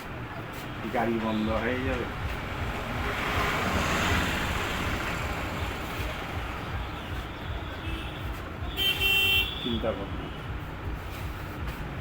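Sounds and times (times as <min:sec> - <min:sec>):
road traffic rumble: 0:00.0 - 0:12.0.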